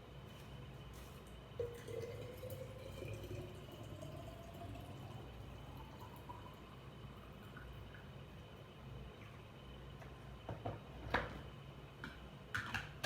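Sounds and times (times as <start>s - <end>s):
liquid pouring into a container: 1.2s - 9.6s.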